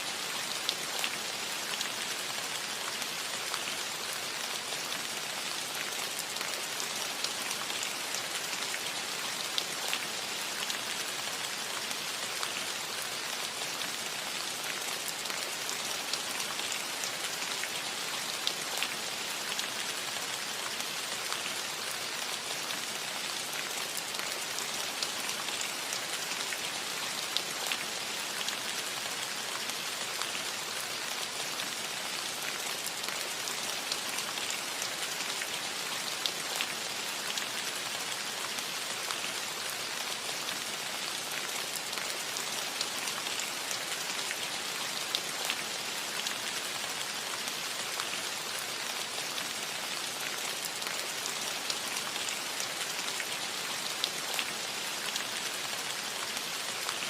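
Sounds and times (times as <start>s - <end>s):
light rain on a metal roof: 0.0s - 57.0s.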